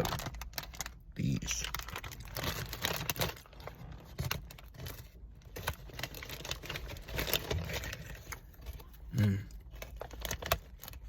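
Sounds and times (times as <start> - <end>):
chip bag crinkling: 0.0 - 8.9, 9.6 - 11.0.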